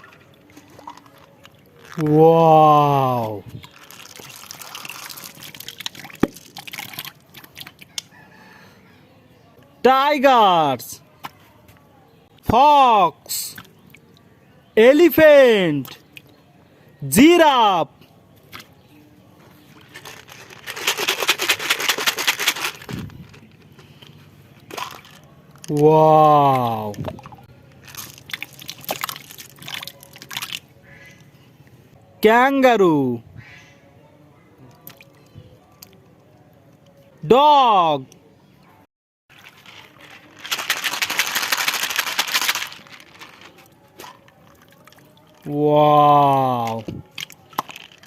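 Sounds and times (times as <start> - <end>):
crinkling scraping crackle: 39.3 - 44.2.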